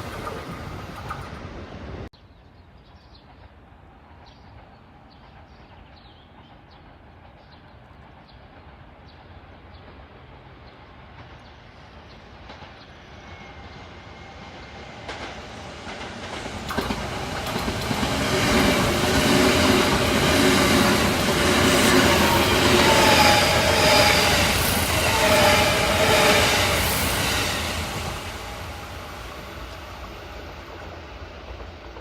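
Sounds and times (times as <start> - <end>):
wheels clicking over rail joints: 0.0 - 1.6, 15.9 - 22.3
electric train passing: 0.0 - 2.1, 6.5 - 32.0
train whining tone: 12.9 - 31.9.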